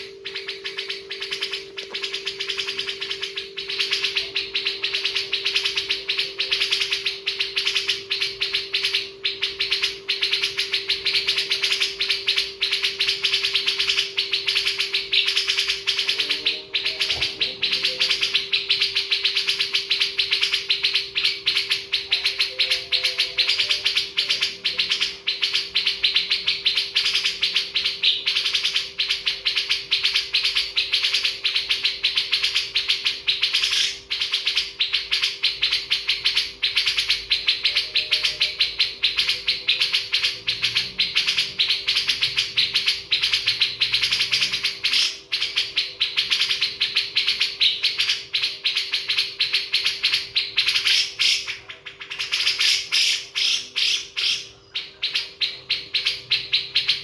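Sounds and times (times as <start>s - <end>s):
faint steady hum: 0.0s - 57.0s
many birds chirping: 0.0s - 57.0s.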